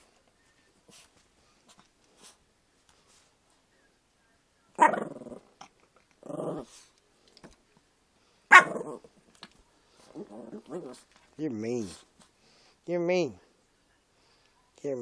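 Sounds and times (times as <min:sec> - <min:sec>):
dog barking: 0:04.8 - 0:05.1, 0:08.5 - 0:09.0.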